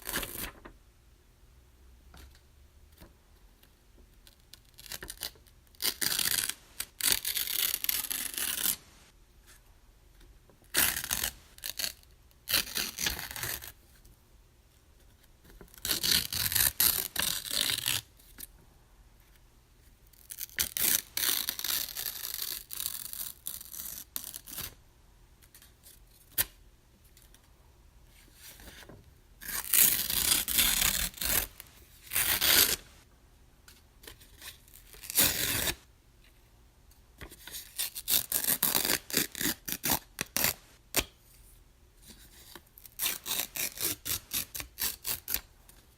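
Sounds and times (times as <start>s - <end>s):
paper being ripped: 5.8s - 8.9s, 10.7s - 13.6s, 15.8s - 18.0s, 29.4s - 33.0s, 35.0s - 35.8s, 37.7s - 40.6s.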